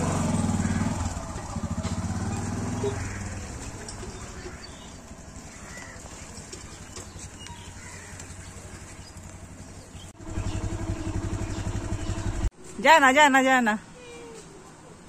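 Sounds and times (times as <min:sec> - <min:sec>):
engine throbbing: 0:00.0 - 0:04.6, 0:10.2 - 0:12.5.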